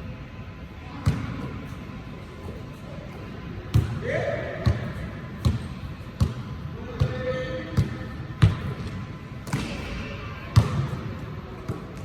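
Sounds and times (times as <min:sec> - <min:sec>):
basketball bouncing on hard court: 0:04.6 - 0:07.1, 0:07.8 - 0:08.8, 0:10.6 - 0:11.0.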